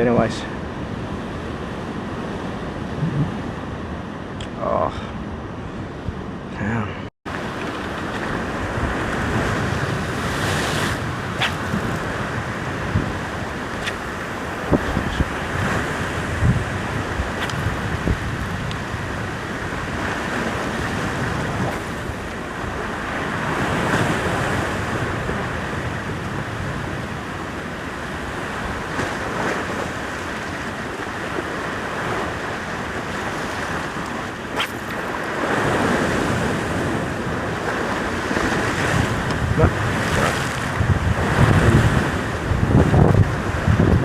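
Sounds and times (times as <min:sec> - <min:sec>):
wind buffeting microphone: 0:00.9 - 0:04.4, 0:07.3 - 0:44.0
ocean swell breaking on rock: 0:07.3 - 0:25.7, 0:28.0 - 0:43.7.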